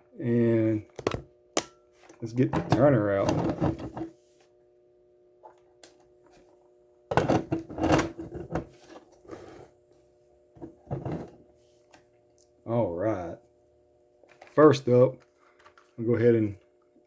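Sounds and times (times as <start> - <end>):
objects clattering and knocking: 2.5 - 4.1, 7.1 - 9.2.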